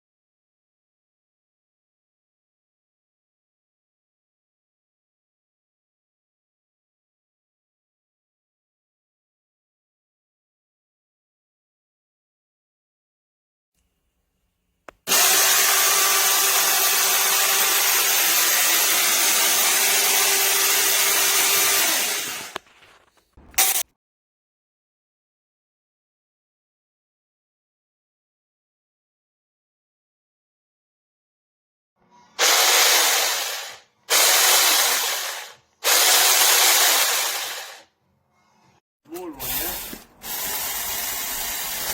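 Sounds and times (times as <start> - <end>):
mini chainsaw sawing wood: 15.1 - 22.6, 32.4 - 37.9, 39.2 - 41.9.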